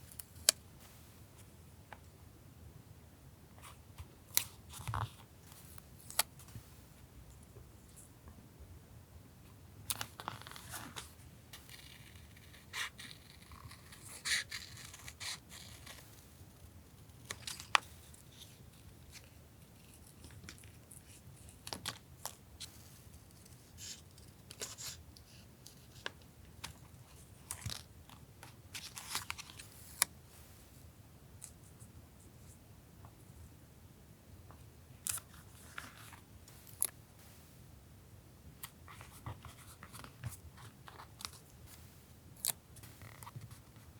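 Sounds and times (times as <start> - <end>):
paper crinkling and rustling: 23.3 - 30.1.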